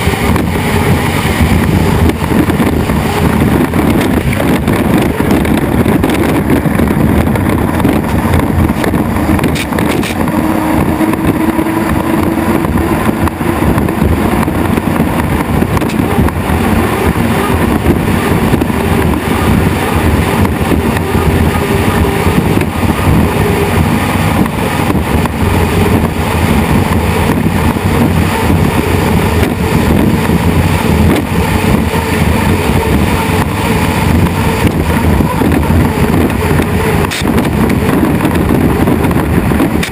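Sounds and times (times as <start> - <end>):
hydroplane engines roaring: 0.0 - 39.9.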